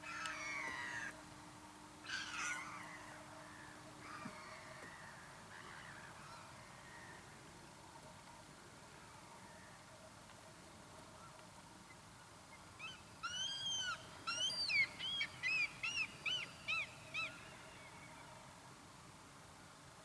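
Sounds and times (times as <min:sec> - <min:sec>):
shorebird piping calls: 0:12.8 - 0:17.8.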